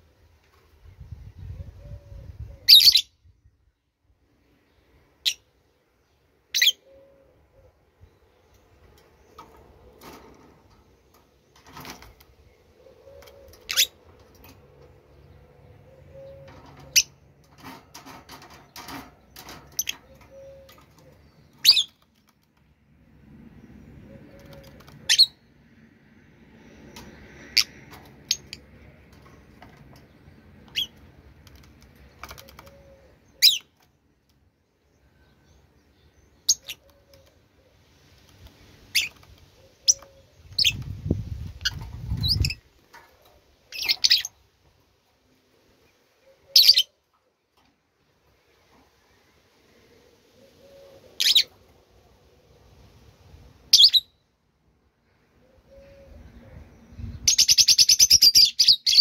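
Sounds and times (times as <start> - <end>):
high-pitched bird chirps: 53.7 - 54.2, 57.1 - 59.0.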